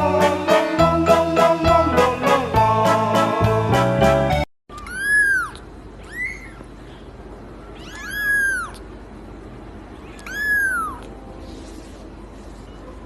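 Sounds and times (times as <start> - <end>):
background music: 0.0 - 4.5
kitten meowing: 4.7 - 6.6, 7.6 - 8.8, 10.0 - 11.1.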